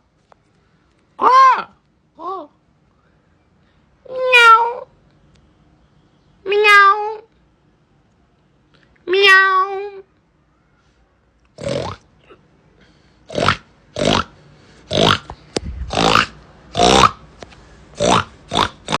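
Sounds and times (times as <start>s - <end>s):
meow-like animal cry: 1.2s - 2.5s, 4.1s - 4.9s, 6.5s - 7.3s, 9.1s - 10.1s
rough grunting animal calls: 11.6s - 12.4s, 13.3s - 17.2s, 18.0s - 19.0s.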